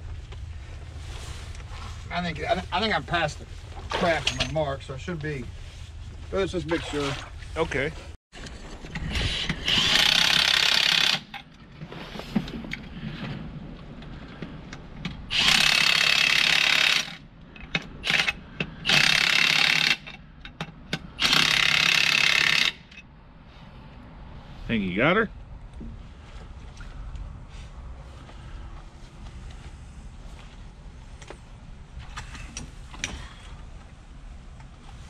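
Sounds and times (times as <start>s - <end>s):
impact wrench running: 9.6s - 11.4s, 15.3s - 17.2s, 18.0s - 20.2s, 21.2s - 23.0s.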